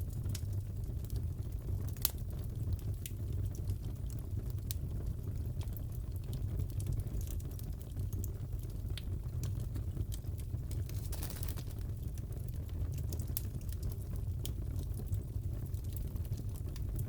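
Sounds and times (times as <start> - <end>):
fire rumbling: 0.0 - 17.0
fire pops and snaps: 1.8 - 3.7, 5.6 - 15.0.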